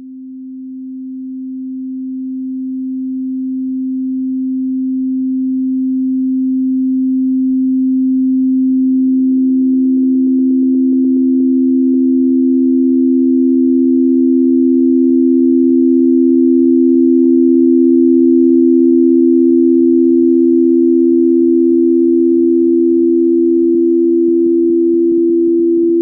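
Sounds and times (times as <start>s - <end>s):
higher sine tone: 0.0s - 26.0s
low sine tone: 0.0s - 26.0s.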